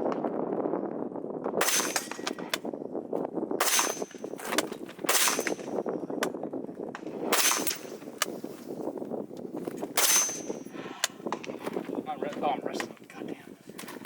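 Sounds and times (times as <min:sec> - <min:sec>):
rifle shots: 0:01.6 - 0:02.6, 0:03.6 - 0:04.2, 0:05.0 - 0:05.8, 0:07.2 - 0:08.1, 0:10.0 - 0:11.5.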